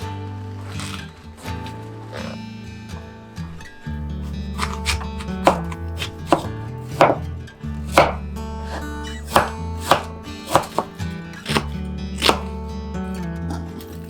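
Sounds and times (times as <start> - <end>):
soft background music: 0.0 - 14.0
knife cutting on cutting board: 0.6 - 2.4, 4.2 - 7.2, 7.9 - 12.5.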